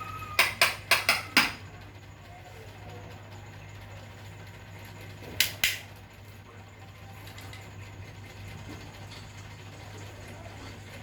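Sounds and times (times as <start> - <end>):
sharp clicks: 5.4 - 5.9.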